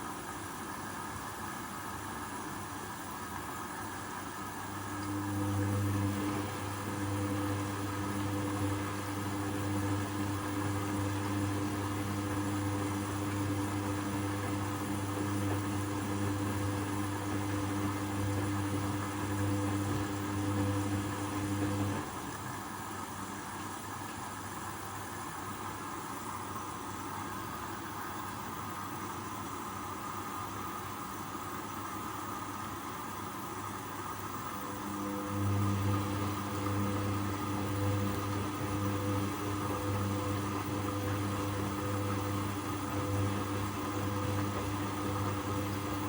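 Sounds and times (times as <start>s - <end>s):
low electrical hum: 33.8s - 46.0s.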